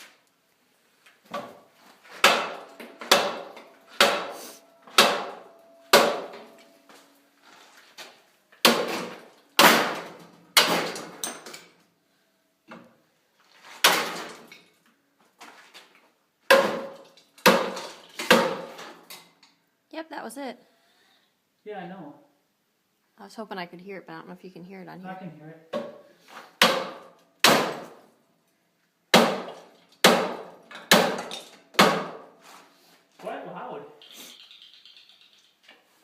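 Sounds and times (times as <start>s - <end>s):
loud ringing bangs: 2.3s - 6.9s.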